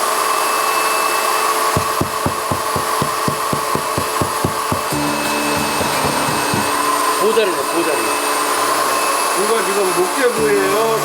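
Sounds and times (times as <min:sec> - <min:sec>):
electric drill boring into wall: 0:00.0 - 0:11.0
drill bit knocking: 0:01.6 - 0:07.4.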